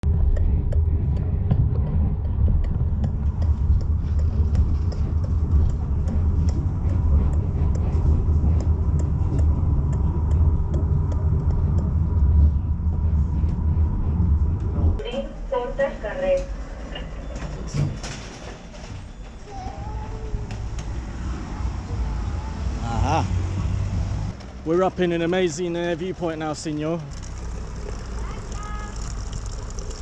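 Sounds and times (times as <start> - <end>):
vehicle low rumble: 0.0 - 30.0
faint clicks and rattles: 24.3 - 30.0.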